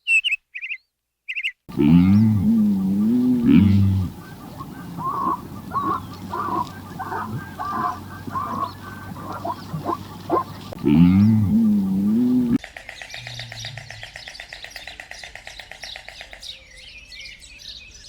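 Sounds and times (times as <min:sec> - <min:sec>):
drawn-out wavering animal call: 0:01.7 - 0:12.6
short animal calls: 0:01.7 - 0:12.6.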